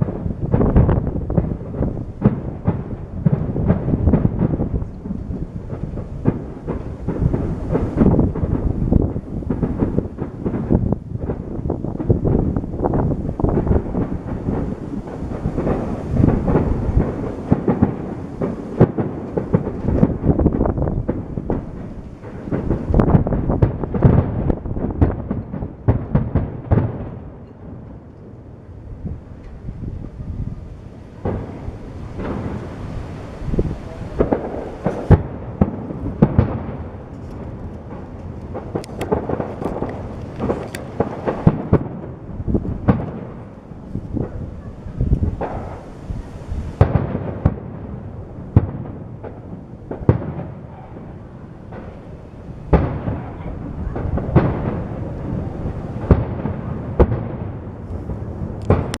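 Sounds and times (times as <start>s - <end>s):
fireworks bursting with sharp bangs: 0.0s - 59.0s.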